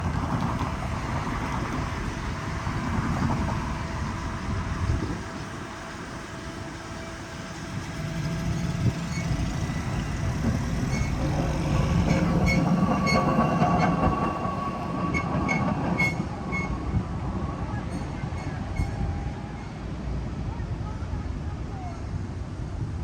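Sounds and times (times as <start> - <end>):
truck driving past on rails: 0.5 - 17.2.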